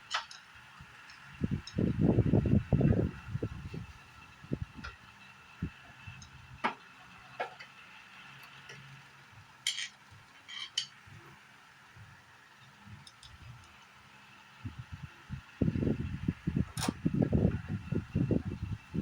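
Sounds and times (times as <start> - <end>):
metal parts clinking: 9.6 - 11.0.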